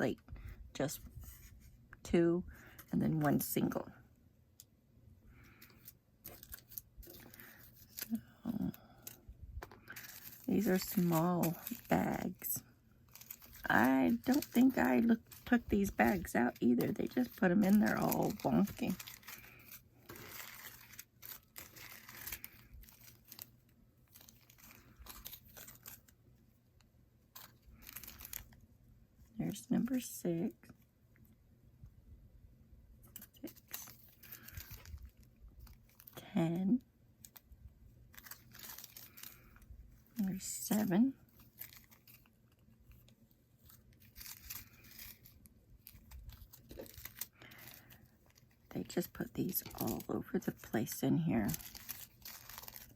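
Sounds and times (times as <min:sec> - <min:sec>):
plastic bags crinkling: 0:05.4 - 0:26.2, 0:27.4 - 0:28.6, 0:33.2 - 0:36.4, 0:38.0 - 0:52.9.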